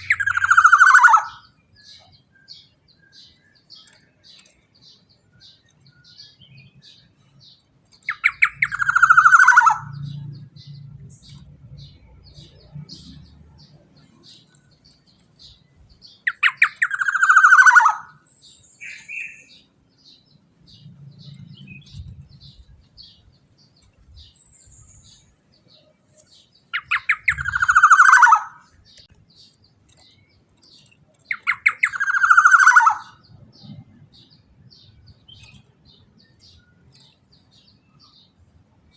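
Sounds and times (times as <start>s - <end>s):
bird harsh falling nasal calls: 0.0s - 1.6s, 8.1s - 10.7s, 16.2s - 19.7s, 26.7s - 28.8s, 31.3s - 33.4s.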